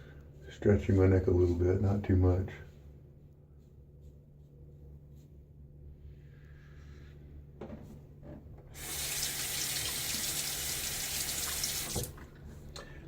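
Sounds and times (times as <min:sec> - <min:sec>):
tap water running into sink: 0:08.8 - 0:12.2.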